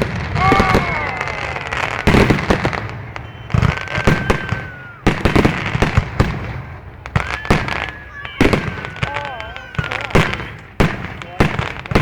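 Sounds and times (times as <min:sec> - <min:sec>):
high firework whistle: 0:00.0 - 0:06.1, 0:07.1 - 0:11.0
fireworks banging and crackling: 0:00.0 - 0:12.0.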